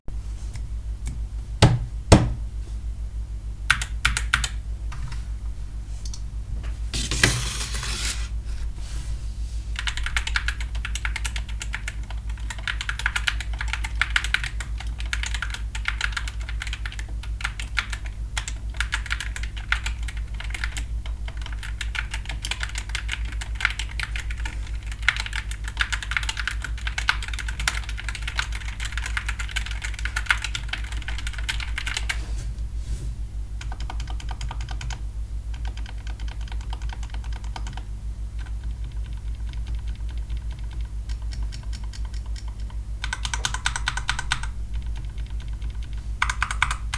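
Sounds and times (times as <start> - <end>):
steady low hum: 0.1 - 46.9
mechanical keyboard typing: 3.7 - 4.6, 9.8 - 32.2, 33.6 - 46.9.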